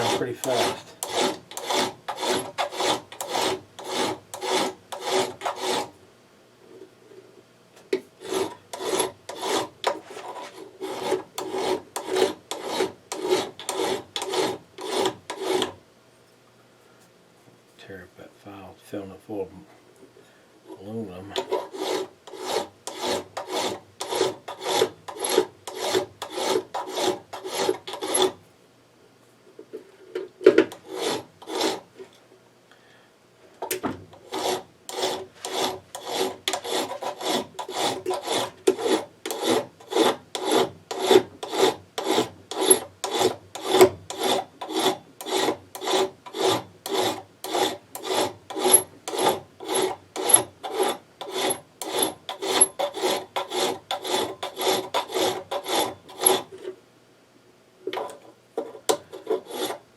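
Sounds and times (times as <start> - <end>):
file rasping on metal: 0.0 - 6.0, 8.2 - 15.8, 21.4 - 28.4, 30.7 - 31.9, 34.2 - 56.6, 58.9 - 59.8.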